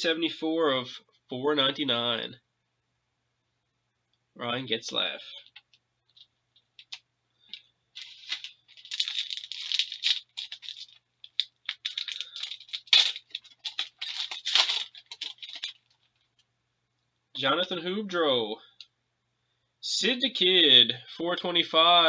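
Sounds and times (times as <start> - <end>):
trading cards rustling and clicking: 5.4 - 16.5.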